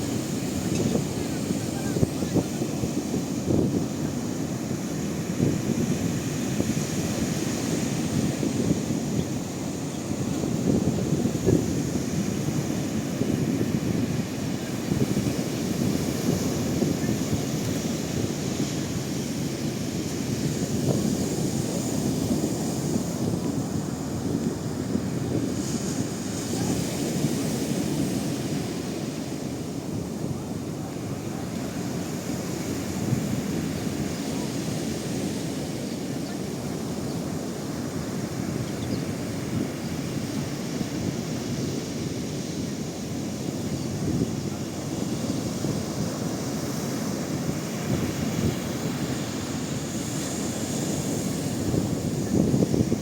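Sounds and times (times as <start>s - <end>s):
sea waves rushing: 0.0s - 53.0s
wind buffeting microphone: 0.0s - 53.0s.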